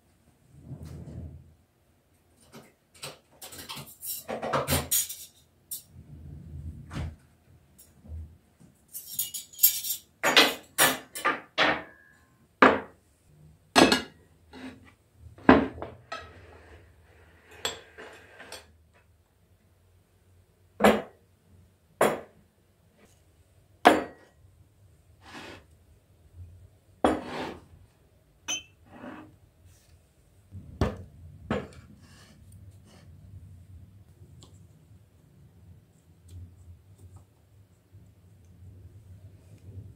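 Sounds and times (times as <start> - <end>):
dishes clinking on wooden table: 28.5 - 28.8.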